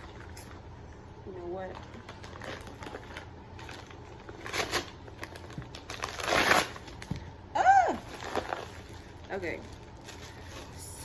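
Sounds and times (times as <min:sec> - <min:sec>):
packaging crinkling and rustling: 0:01.6 - 0:07.3, 0:07.9 - 0:11.0.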